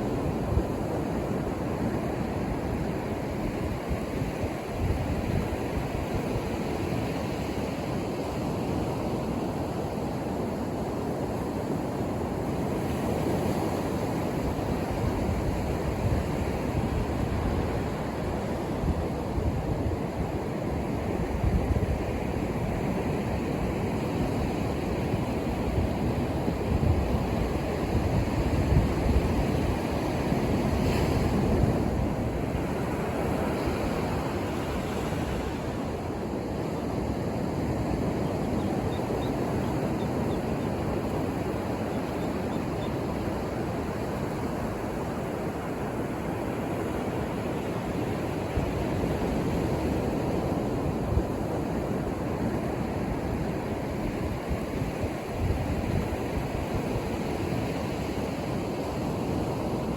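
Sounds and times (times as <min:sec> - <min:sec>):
surf breaking on a beach: 0:00.0 - 0:59.9
wind on microphone: 0:12.2 - 0:59.9.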